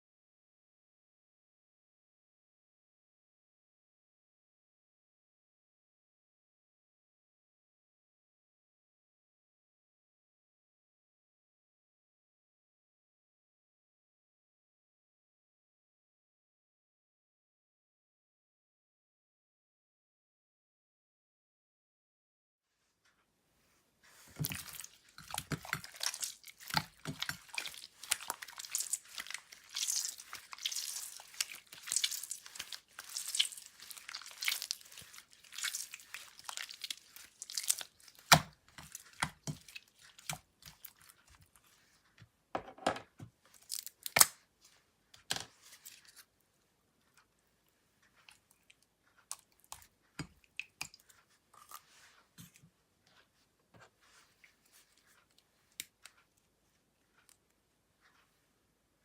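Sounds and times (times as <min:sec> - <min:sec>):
slime crackling and popping: 0:24.4 - 0:41.1.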